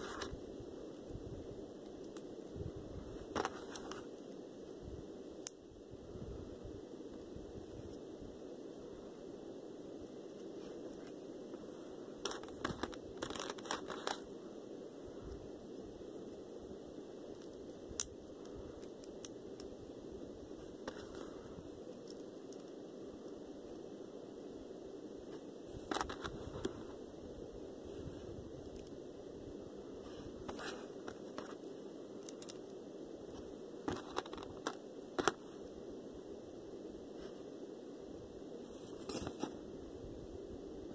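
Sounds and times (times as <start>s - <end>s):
steady low hum: 0.0s - 40.9s
packaging crinkling and tearing: 12.3s - 14.2s.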